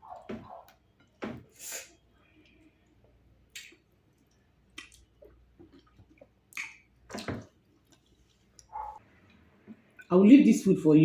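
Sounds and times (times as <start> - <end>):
wet mouth clicks and smacks eating: 3.5 - 8.8.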